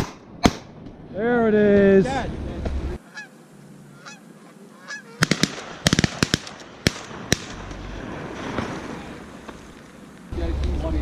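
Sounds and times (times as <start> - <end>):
sharp cracks: 0.0 - 1.0, 5.2 - 10.3
geese honking: 3.0 - 6.5.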